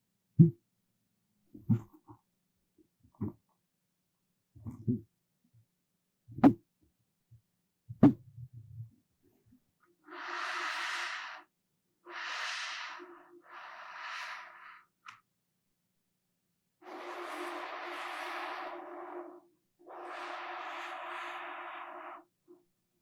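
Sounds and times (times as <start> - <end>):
soft low thumps: 0.4 - 0.6, 1.6 - 2.0, 4.6 - 5.1, 6.3 - 6.6, 7.9 - 8.9.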